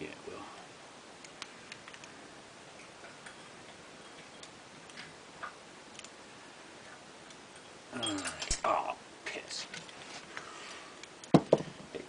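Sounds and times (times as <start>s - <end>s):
steady low hiss: 0.0s - 12.0s
small metal parts clicking: 7.3s - 8.7s.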